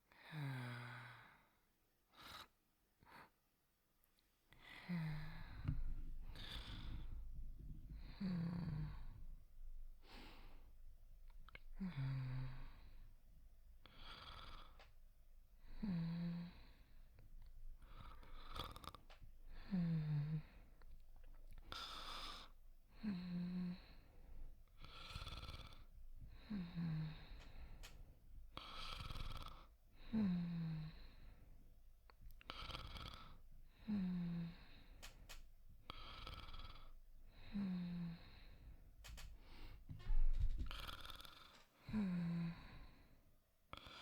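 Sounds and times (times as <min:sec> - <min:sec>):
person snoring softly: 0:04.6 - 0:10.8, 0:11.4 - 0:13.1, 0:13.8 - 0:15.0, 0:15.6 - 0:17.2, 0:17.8 - 0:31.4, 0:32.3 - 0:44.0
soft voiced snore: 0:08.0 - 0:09.2, 0:13.8 - 0:14.9, 0:17.8 - 0:19.0, 0:24.8 - 0:27.6, 0:28.6 - 0:31.2, 0:32.4 - 0:34.9, 0:35.9 - 0:38.6, 0:40.6 - 0:43.0
breathy inhale: 0:10.0 - 0:10.8, 0:21.7 - 0:29.2, 0:30.0 - 0:31.6, 0:33.2 - 0:43.2.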